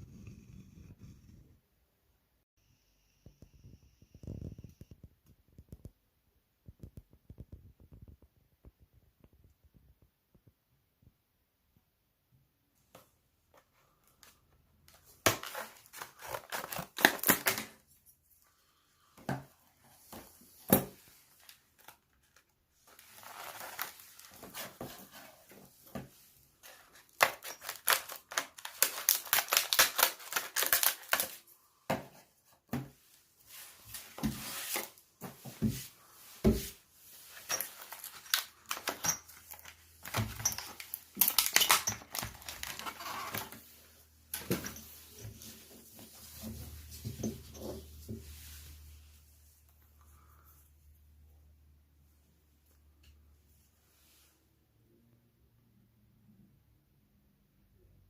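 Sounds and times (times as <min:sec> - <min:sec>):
objects clicking and rattling: 0:37.4 - 0:43.6.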